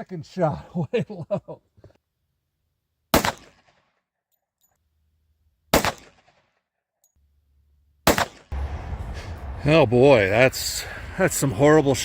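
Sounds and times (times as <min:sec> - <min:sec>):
pistol shots ringing: 0:03.1 - 0:03.7, 0:05.7 - 0:06.4, 0:08.1 - 0:08.5.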